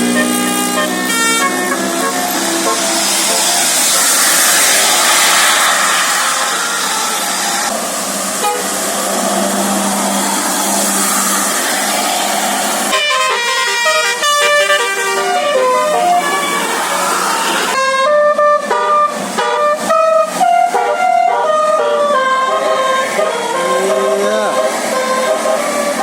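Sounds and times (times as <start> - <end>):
musical air horn melody: 0.0 - 4.7, 8.4 - 8.7, 12.9 - 26.0
loud steady rushing noise: 0.0 - 17.8, 19.0 - 26.0.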